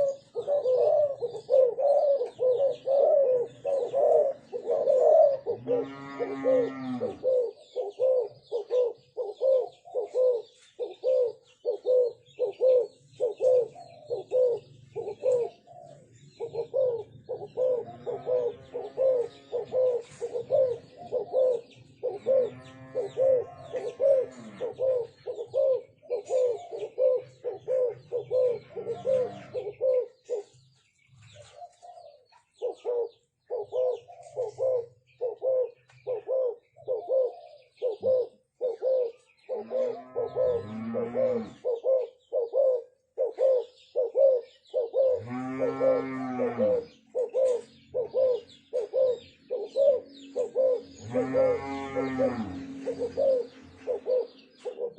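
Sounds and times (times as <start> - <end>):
doves cooing quickly: 0.0 - 54.9
deep drawn-out coos: 4.2 - 7.4, 17.6 - 20.0, 22.2 - 25.1, 27.8 - 29.8, 39.6 - 41.7, 45.1 - 47.0, 51.0 - 53.3.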